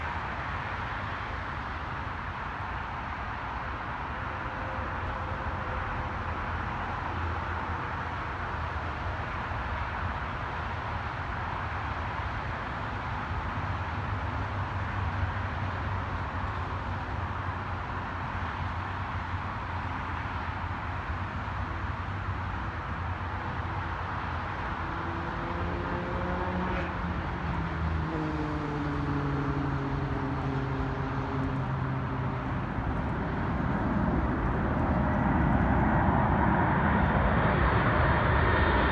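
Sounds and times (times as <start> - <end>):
jet engines rumbling: 16.5 - 38.9.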